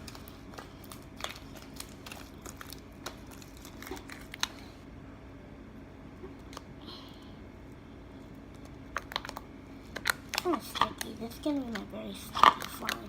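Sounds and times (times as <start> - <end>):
slime clicking and crackling: 0.0 - 4.8, 8.5 - 13.0.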